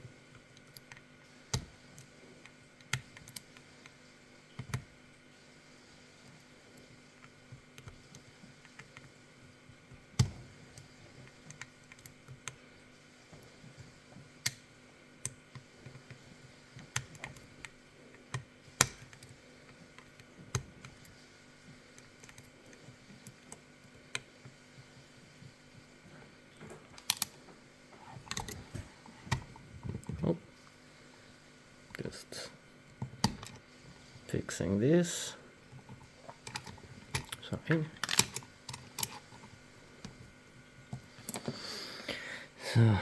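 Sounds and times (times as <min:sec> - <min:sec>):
lock-picking tools clicking: 0:27.0 - 0:27.4, 0:36.4 - 0:39.2.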